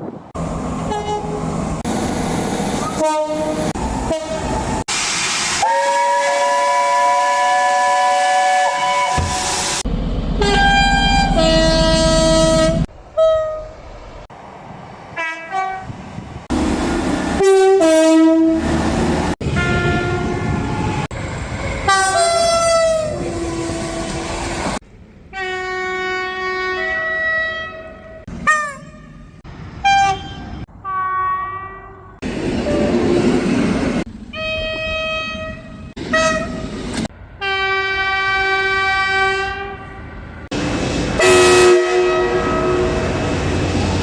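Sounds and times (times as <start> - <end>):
trains running: 0.0 - 25.3, 32.2 - 39.1, 39.9 - 44.0
train horns: 0.8 - 1.5, 2.8 - 4.6, 5.6 - 9.6, 10.4 - 13.8, 15.2 - 15.9, 17.3 - 18.8, 19.4 - 21.1, 21.8 - 24.3, 25.3 - 33.0, 34.3 - 36.7, 37.4 - 40.2, 41.2 - 43.8.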